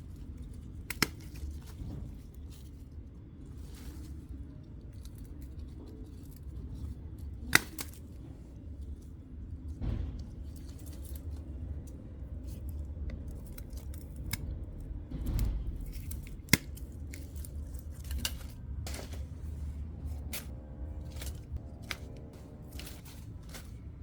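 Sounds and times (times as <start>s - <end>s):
garden shears snipping plants: 15.3s - 24.0s.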